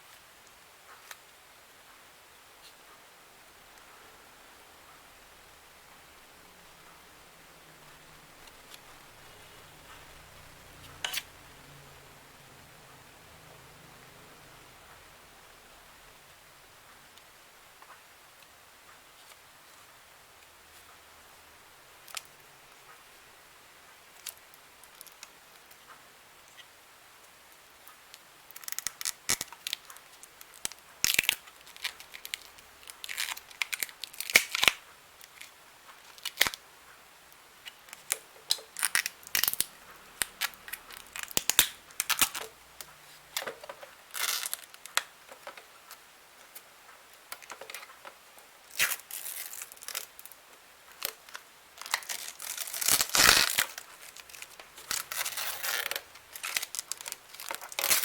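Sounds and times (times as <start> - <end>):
plastic and cardboard crinkling: 28.5 - 35.5, 43.1 - 45.7, 47.3 - 58.0.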